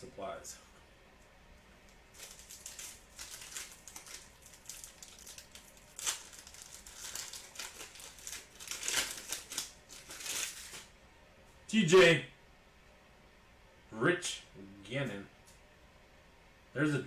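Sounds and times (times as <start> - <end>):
card packaging crinkling: 2.0 - 10.9.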